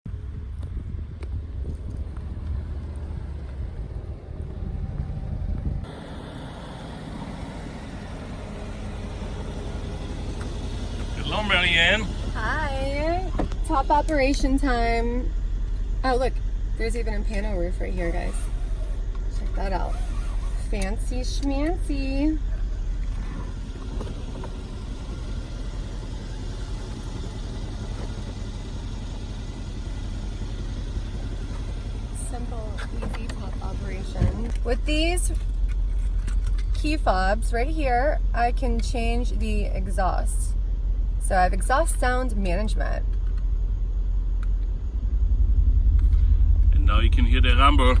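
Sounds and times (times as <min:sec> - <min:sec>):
car engine deep rumble: 0:00.0 - 0:48.0
power retractable hardtop running: 0:07.2 - 0:14.5, 0:17.3 - 0:21.8, 0:22.4 - 0:36.8.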